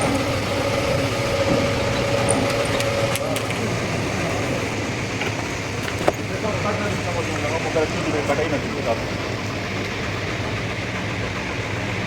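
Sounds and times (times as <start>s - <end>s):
machinery noise: 0.0s - 12.0s.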